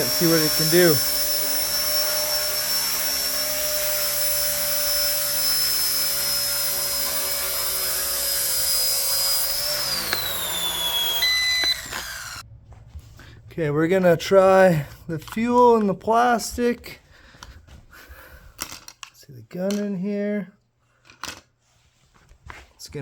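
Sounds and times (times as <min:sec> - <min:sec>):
rc helicopter rotor whine: 0:00.0 - 0:12.4.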